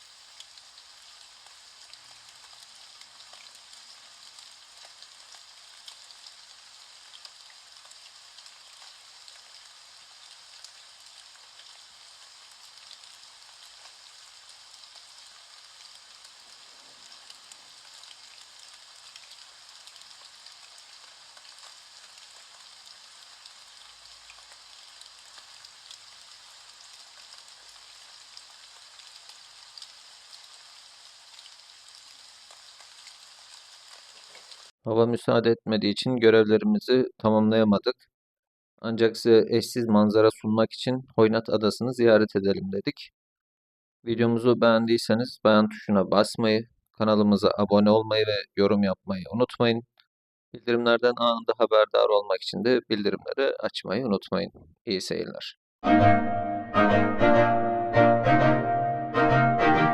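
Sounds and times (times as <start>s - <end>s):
rain patter: 0.0s - 34.8s.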